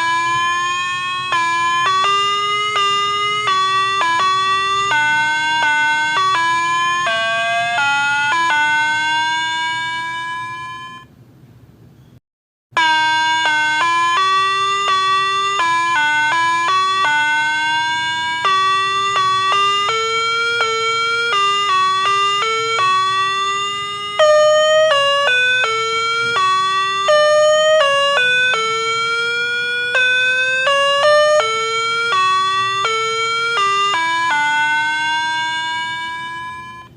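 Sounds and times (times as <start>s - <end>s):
spooky bell melody: 0.0s - 11.1s, 12.8s - 36.9s.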